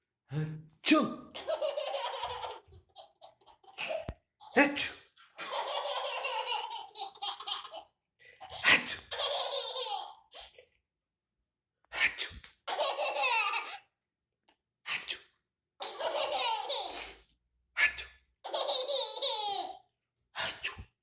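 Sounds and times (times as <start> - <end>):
baby laughing: 1.3 - 10.6, 12.7 - 13.9, 15.8 - 17.2, 18.4 - 19.8.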